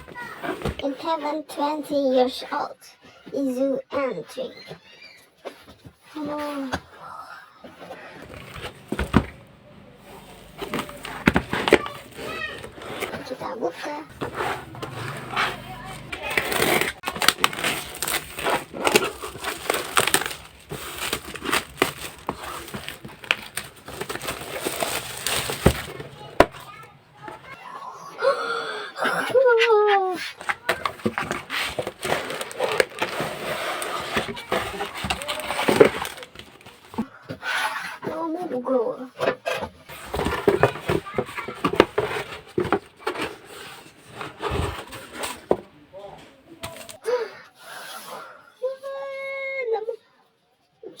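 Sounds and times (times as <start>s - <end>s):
packaging torn and crumpled: 14.1s - 26.7s, 30.4s - 37.0s.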